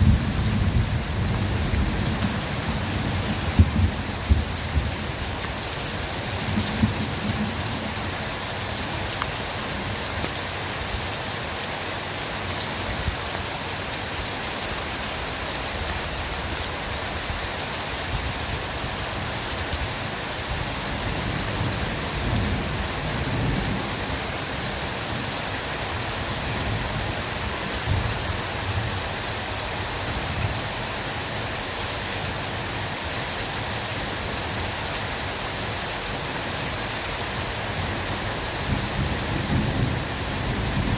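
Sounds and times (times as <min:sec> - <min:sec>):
distant thunder rumbles: 0:00.0 - 0:05.2
heavy rain in a forest: 0:00.0 - 0:40.9.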